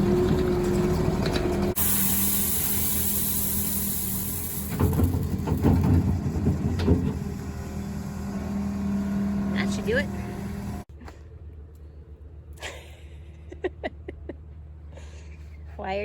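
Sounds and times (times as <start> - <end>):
tractor engine running: 0.0 - 10.9
gravel pouring hiss: 1.8 - 5.5
clattering knocks: 4.7 - 7.5.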